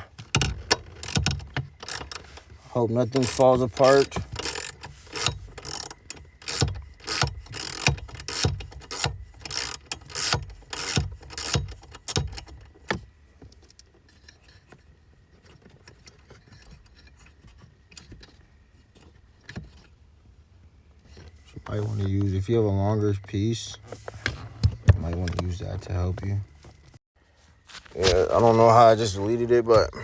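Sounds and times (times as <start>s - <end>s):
hand tools clicking and rattling: 0.0s - 13.0s.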